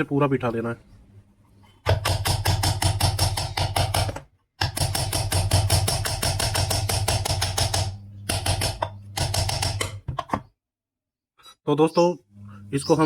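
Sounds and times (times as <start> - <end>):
power tool rapid knocking: 1.9 - 10.0
low hum: 7.9 - 9.2, 12.3 - 13.0.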